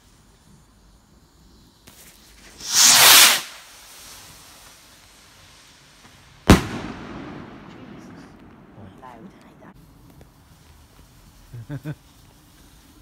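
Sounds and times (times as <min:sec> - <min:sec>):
firework rocket whoosh: 0:00.0 - 0:13.0
firework bang: 0:02.6 - 0:03.6, 0:06.4 - 0:09.4.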